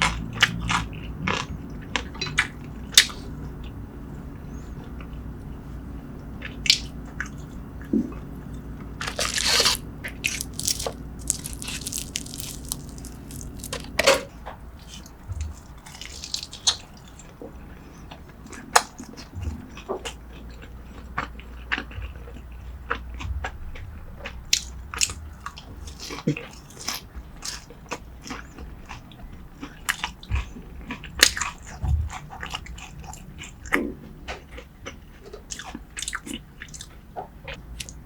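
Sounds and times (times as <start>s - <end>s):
biting and chewing food: 6.4s - 38.0s
wet mouth noises: 9.0s - 13.9s
crunching: 9.0s - 17.0s.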